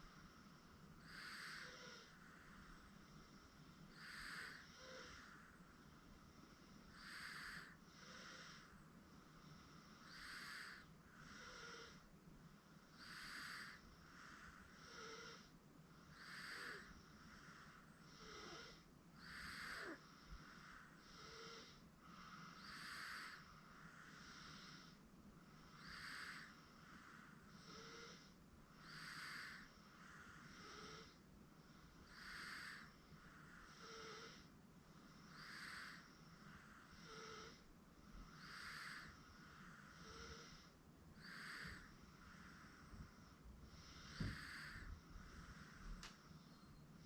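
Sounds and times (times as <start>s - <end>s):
baby breathing with light snore: 38.3s - 46.0s.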